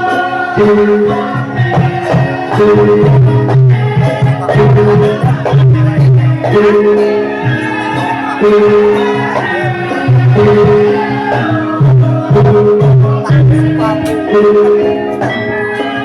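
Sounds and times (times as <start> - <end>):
traditional music with long held notes: 0.0 - 16.0.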